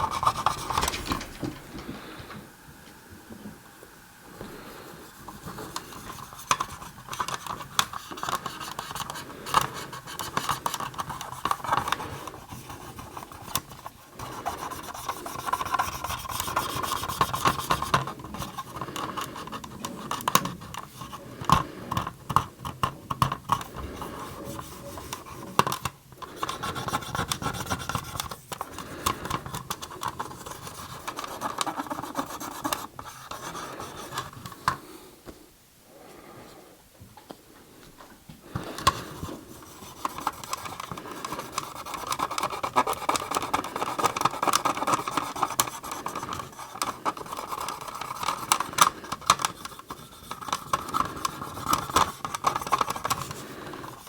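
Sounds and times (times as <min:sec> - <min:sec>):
swab rubbing on plastic: 0:09.8 - 0:18.7, 0:39.2 - 0:48.7, 0:49.4 - 0:54.0.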